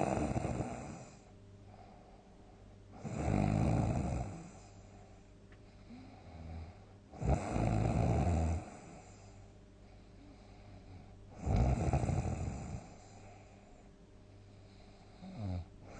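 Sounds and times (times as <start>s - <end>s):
person snoring loudly: 0.0s - 1.2s, 3.0s - 4.6s, 5.9s - 9.0s, 11.4s - 13.0s.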